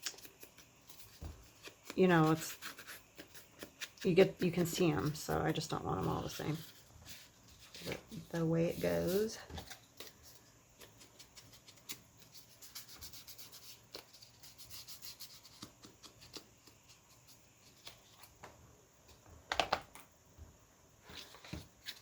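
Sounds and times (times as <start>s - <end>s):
paper rustling and scraping: 5.0s - 14.6s.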